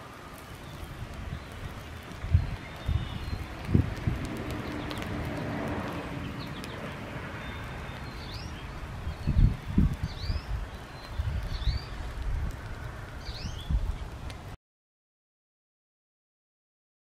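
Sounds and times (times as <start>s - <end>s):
outdoor background hiss: 0.0s - 14.6s
small birds chirping: 0.3s - 14.4s.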